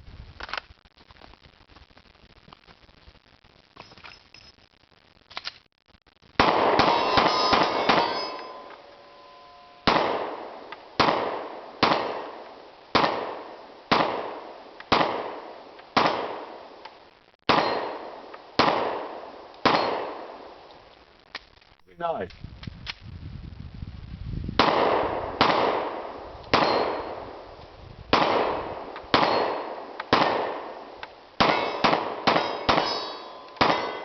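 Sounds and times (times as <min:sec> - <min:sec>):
pistol shots echoing: 0:06.4 - 0:09.0, 0:09.8 - 0:16.6, 0:17.5 - 0:20.4, 0:24.6 - 0:27.4, 0:28.1 - 0:34.0
steel targets ringing: 0:06.6 - 0:10.7, 0:17.5 - 0:18.0, 0:26.6 - 0:27.2, 0:29.2 - 0:29.8, 0:31.4 - 0:34.0.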